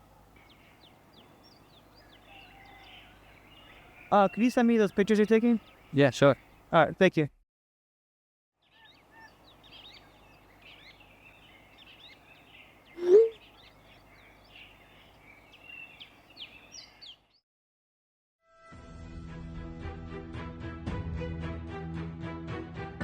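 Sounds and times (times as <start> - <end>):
birds chirping and twittering: 0.0 - 7.0, 8.6 - 17.4.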